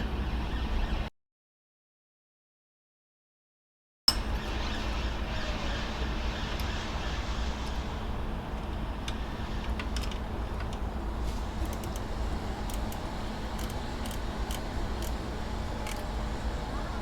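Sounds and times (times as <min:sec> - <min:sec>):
steady low rumble: 0:04.2 - 0:17.0.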